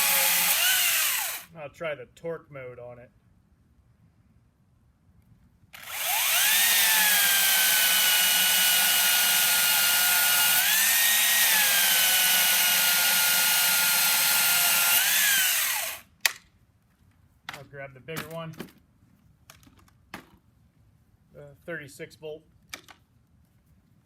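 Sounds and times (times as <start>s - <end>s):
electric chainsaw cutting log: 0.0s - 1.5s, 5.8s - 16.1s.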